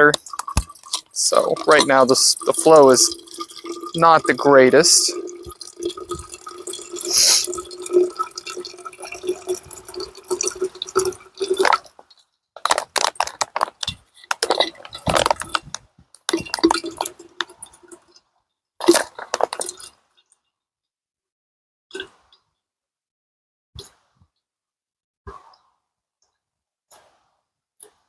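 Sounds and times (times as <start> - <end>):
water trickling into container: 0.0 - 20.4.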